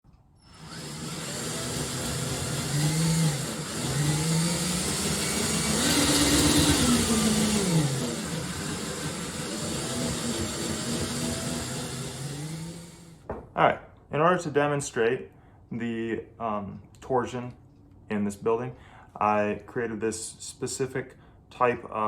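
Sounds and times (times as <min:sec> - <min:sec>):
shake table motor running: 0:00.4 - 0:13.2.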